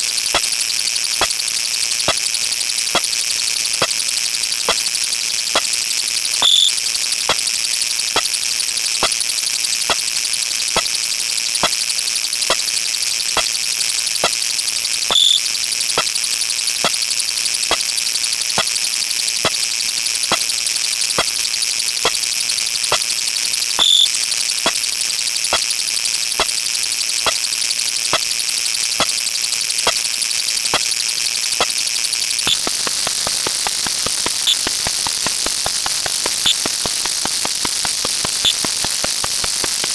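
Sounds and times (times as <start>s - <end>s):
short high beep: 6.4s - 6.8s, 15.1s - 15.4s, 23.8s - 24.2s
regular clicks: 6.4s - 7.4s, 15.1s - 15.4s, 23.8s - 24.8s, 32.5s - 39.9s
steady high hiss: 32.5s - 39.9s.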